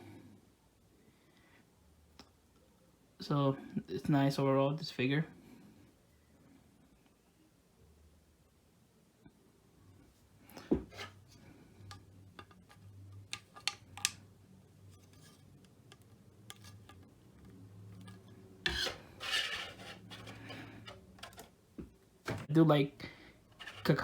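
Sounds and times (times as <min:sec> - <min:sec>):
rubbing scrape: 0:10.9 - 0:11.3, 0:18.1 - 0:21.5, 0:23.5 - 0:24.0
plastic figure thump: 0:21.8 - 0:22.5.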